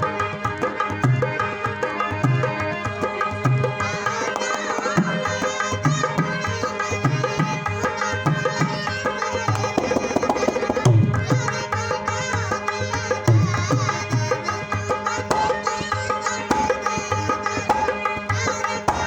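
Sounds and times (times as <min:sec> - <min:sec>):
hand drum beat: 0:09.5 - 0:11.1.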